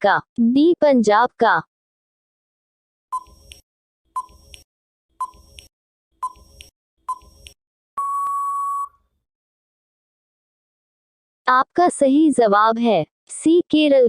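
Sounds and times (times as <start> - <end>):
long steady beep: 8.0 - 9.0
short beeps: 8.0 - 9.0.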